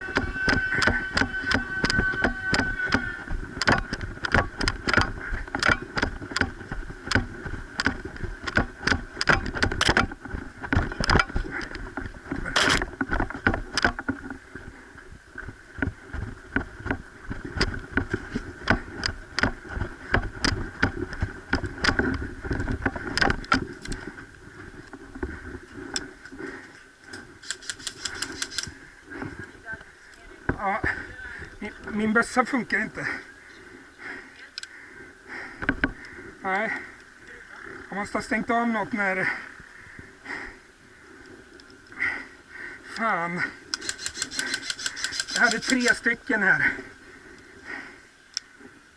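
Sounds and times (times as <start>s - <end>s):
airsoft guns popping: 0.1s - 11.7s, 43.7s - 46.0s.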